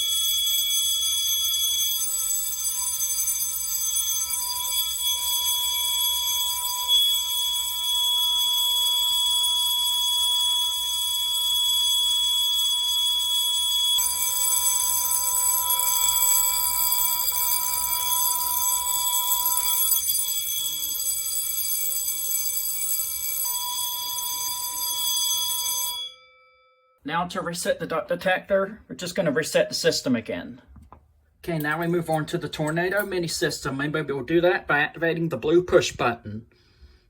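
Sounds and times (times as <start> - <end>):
fire alarm panel tone: 0.0 - 26.9.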